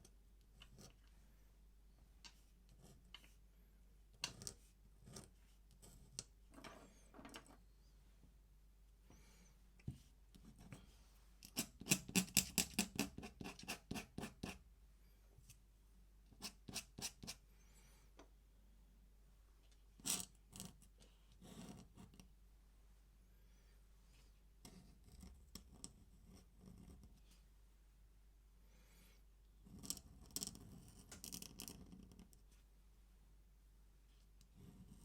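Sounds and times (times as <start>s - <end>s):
pen scratching on paper: 2.7s - 3.3s, 11.5s - 14.6s, 16.4s - 17.4s.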